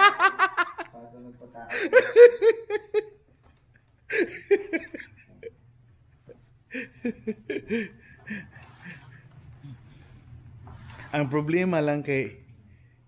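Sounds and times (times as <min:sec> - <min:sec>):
people chuckling: 0:01.7 - 0:03.2, 0:04.1 - 0:05.6, 0:06.2 - 0:09.8.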